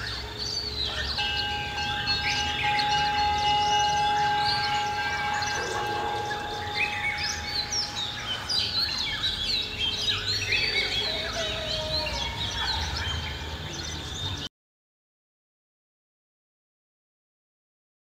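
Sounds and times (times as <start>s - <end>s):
small birds chirping: 0.0s - 14.5s
ringing tones: 1.0s - 11.2s.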